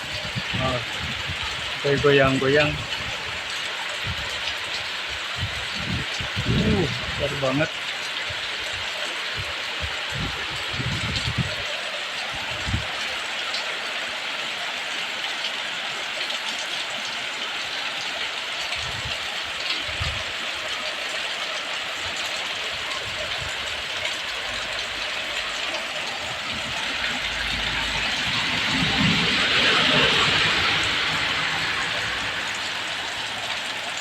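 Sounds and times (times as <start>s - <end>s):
strong wind: 0.0s - 7.5s, 8.3s - 13.1s, 18.7s - 20.4s, 22.1s - 25.1s, 25.7s - 34.0s
heavy rain pouring: 0.0s - 34.0s.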